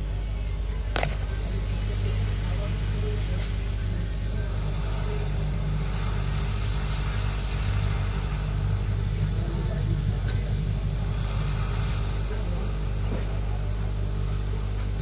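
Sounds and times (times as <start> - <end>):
hot-air station blowing: 0.0 - 15.0.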